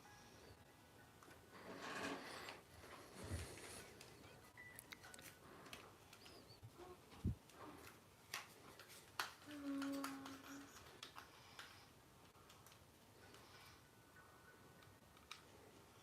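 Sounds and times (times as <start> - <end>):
faint clicks and taps: 3.4 - 13.7, 14.8 - 15.6.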